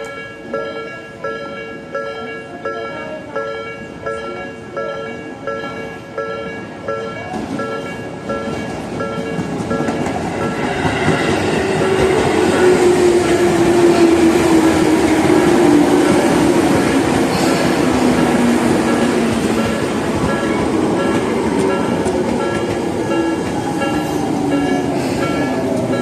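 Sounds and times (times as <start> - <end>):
falling whine of train: 0.0 - 26.0
train running noise: 0.0 - 26.0
train wheel clatter: 7.2 - 26.0.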